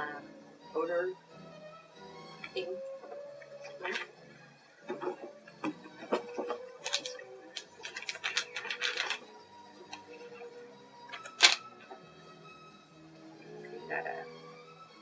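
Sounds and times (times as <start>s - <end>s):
crinkles and clicks: 2.4s - 4.2s, 4.8s - 12.0s
packaging rustling and crackling: 6.0s - 10.4s, 11.1s - 11.8s.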